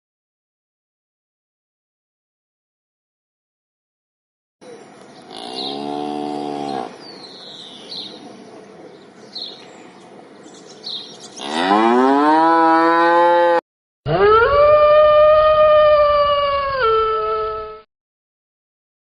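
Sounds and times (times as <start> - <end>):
cow mooing: 5.3 - 7.0, 11.4 - 14.3.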